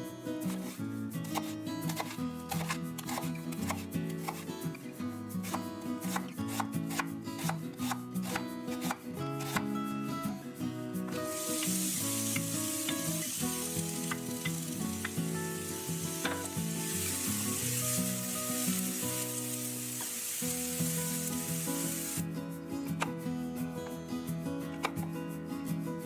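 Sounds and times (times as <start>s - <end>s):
background music: 0.0s - 26.0s
food sizzling in a pan: 11.2s - 22.3s.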